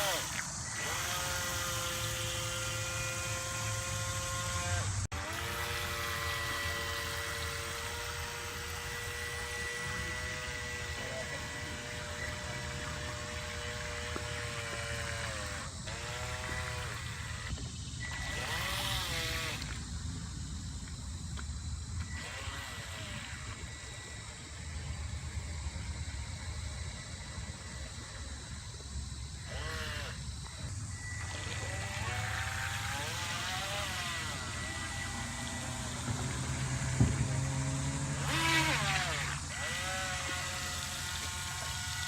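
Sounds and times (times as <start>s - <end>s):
rc boat motor whining: 0.0s - 42.0s.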